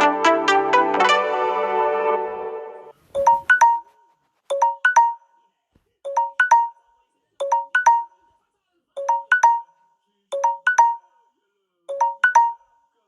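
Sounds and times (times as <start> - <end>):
melodic phone ringtone: 0.0 - 5.4, 6.1 - 8.3, 9.0 - 11.2, 11.9 - 12.8
quick chime notes ringtone: 2.6 - 5.3.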